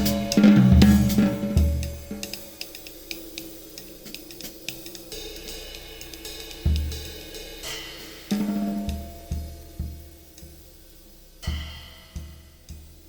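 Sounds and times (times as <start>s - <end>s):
deep resonant drum strikes: 0.0s - 2.4s
cymbal and hi-hat taps: 0.0s - 13.0s
cymbal wash: 0.0s - 13.0s.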